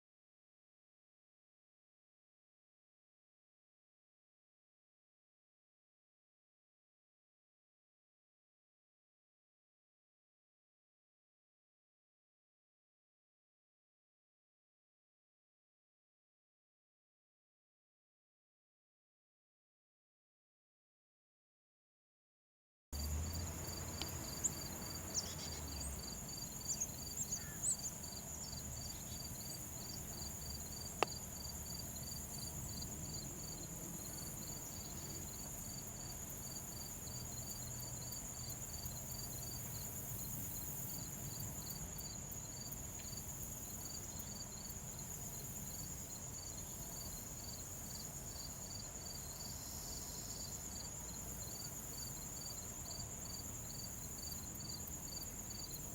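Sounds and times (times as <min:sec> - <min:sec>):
insect chirping in pulses: 0:23.0 - 0:55.9
insect trilling: 0:23.3 - 0:32.5.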